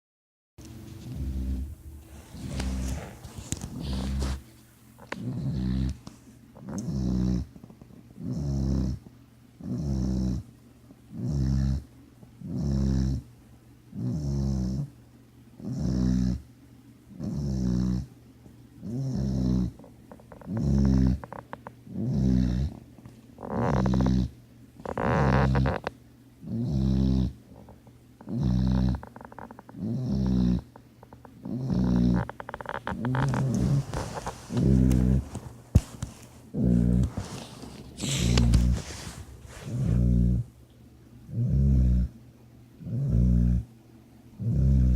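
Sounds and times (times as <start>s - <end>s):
person snoring: 1.0s - 4.4s, 22.0s - 22.8s, 23.4s - 24.3s, 31.4s - 35.4s, 36.5s - 40.5s, 44.4s - 44.9s.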